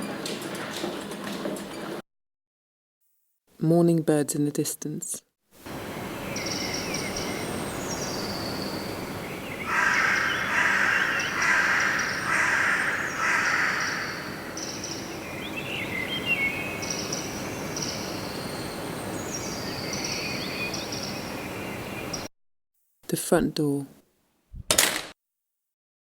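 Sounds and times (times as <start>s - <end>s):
small birds chirping: 5.7s - 22.3s
crow-like caws: 9.6s - 15.0s.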